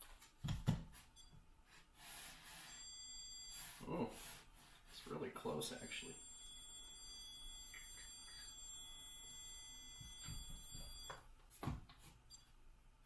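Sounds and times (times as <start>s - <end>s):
stud finder beeping: 2.0s - 11.3s, 12.3s - 12.6s.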